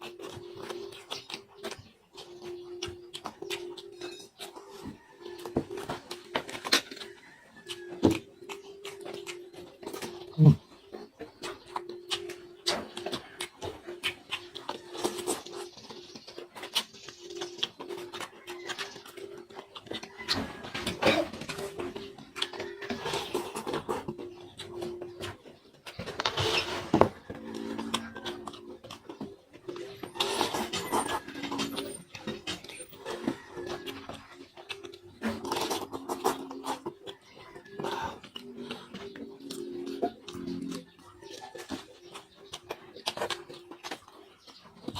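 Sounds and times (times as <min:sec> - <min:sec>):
wet chewing and lip-smacking: 0:00.0 - 0:44.9
slurping: 0:26.1 - 0:44.2.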